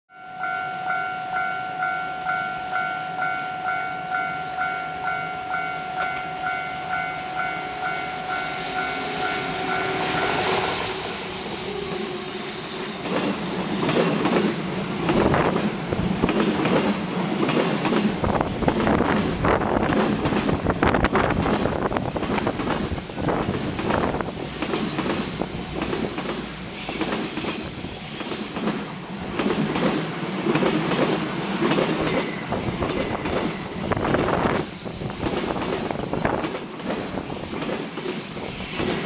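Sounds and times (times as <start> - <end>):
level crossing alarm ringing: 0.1 - 10.8
freight train rumble: 3.5 - 39.0
train wheels clattering on rail joints: 12.8 - 39.0.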